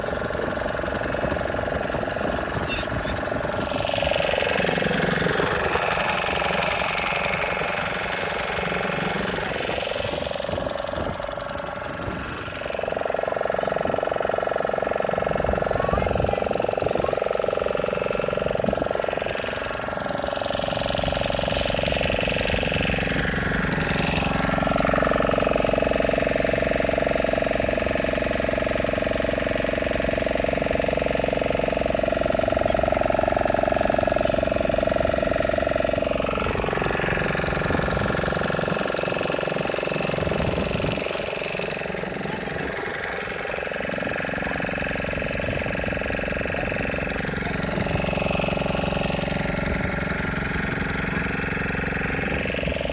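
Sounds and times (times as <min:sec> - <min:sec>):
motorboat engine running: 0:00.0 - 0:52.9.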